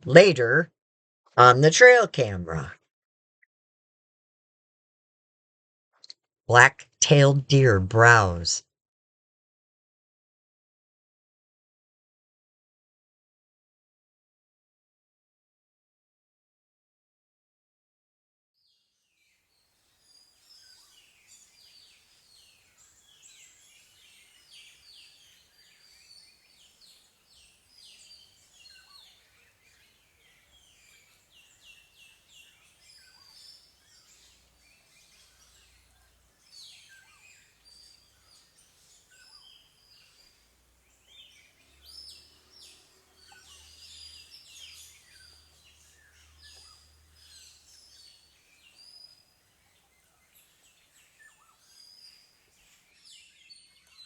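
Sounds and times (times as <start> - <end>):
small birds chirping: 19.1 - 54.0.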